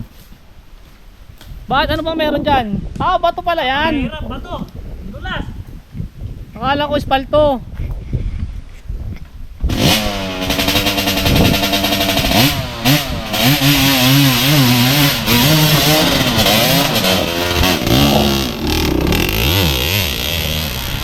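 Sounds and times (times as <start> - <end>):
motorcycle engine revving: 9.7 - 21.0.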